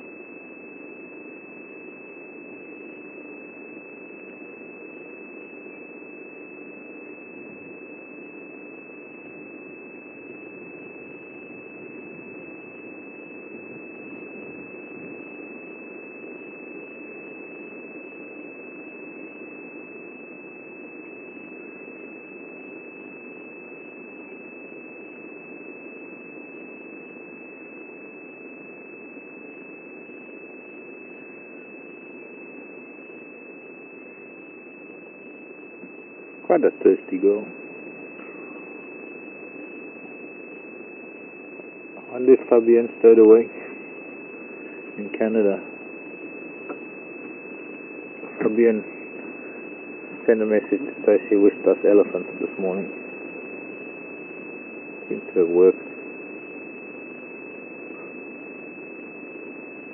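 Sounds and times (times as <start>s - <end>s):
high-pitched whine: 0.0s - 59.9s
electronic hiss: 41.9s - 45.8s, 46.7s - 53.4s, 55.1s - 56.0s.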